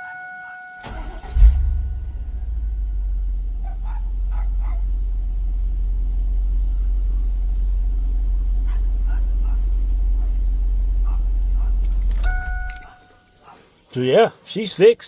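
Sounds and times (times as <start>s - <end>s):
car engine idling: 0.8s - 13.3s
dog barking: 3.6s - 5.0s, 8.6s - 11.8s, 12.4s - 13.7s.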